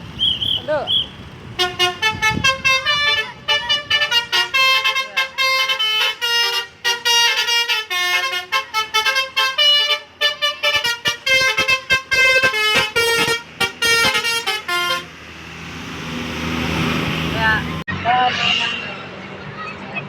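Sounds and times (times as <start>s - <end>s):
bus multi-tone horn tune: 1.4s - 15.2s.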